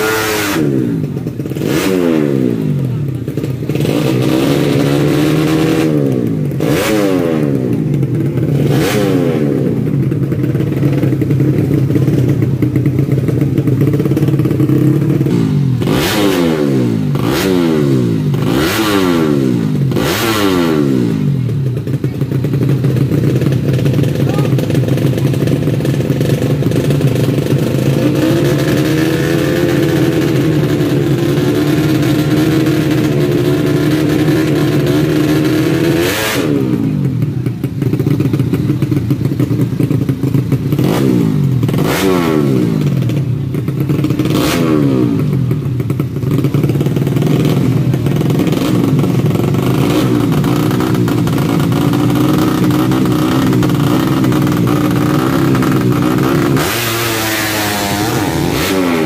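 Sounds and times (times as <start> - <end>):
motorcycle engines revving: 0.0 - 59.0.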